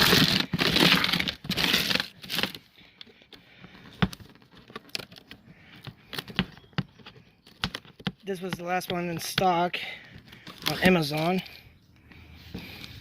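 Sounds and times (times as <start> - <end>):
packaging crinkling: 0.0 - 2.6.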